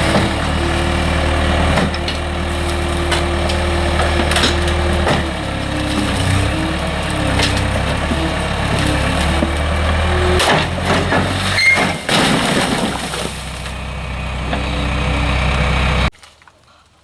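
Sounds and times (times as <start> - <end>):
engine rumbling: 0.0 - 16.1
sharp cracks and knocks: 1.6 - 13.8, 16.1 - 16.6.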